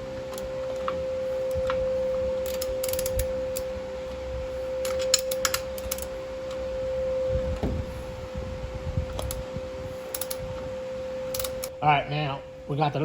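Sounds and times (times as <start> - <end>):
steady high hum: 0.0 - 13.0
ratchet wrench clicking: 2.4 - 3.7, 4.8 - 6.1, 10.1 - 10.4, 11.3 - 11.7.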